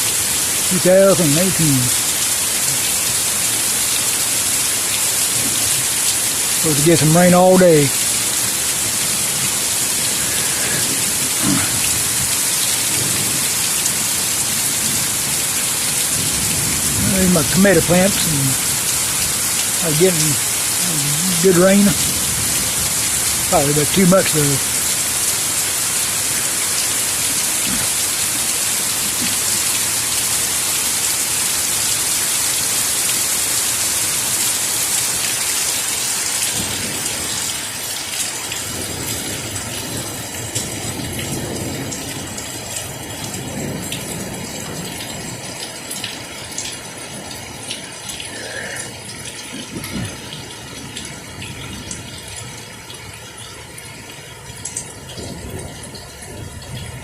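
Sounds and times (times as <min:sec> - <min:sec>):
rain falling: 0:00.0 - 0:57.0
water dripping: 0:42.3 - 0:57.0.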